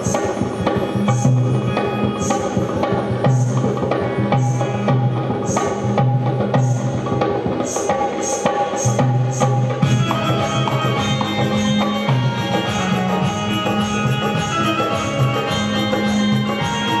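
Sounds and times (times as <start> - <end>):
hand drum strokes: 0.0 - 17.0
melody instrument sustained notes: 9.8 - 17.0.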